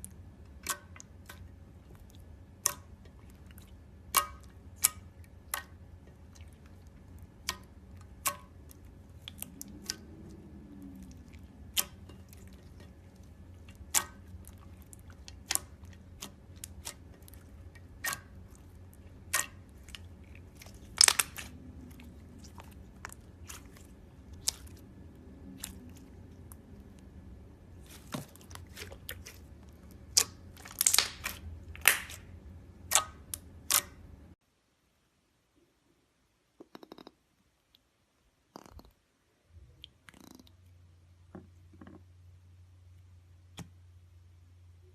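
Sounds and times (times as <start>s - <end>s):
faint steady hum: 0.0s - 44.9s
slime clicking and popping: 19.2s - 23.8s, 27.9s - 34.0s.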